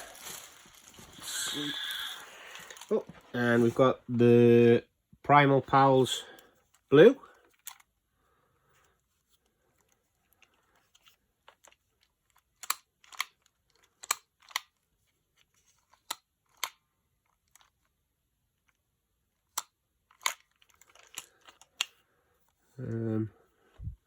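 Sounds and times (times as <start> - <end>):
faint rustling: 0.0 - 4.0
plastic toy clicks and taps: 12.6 - 14.8.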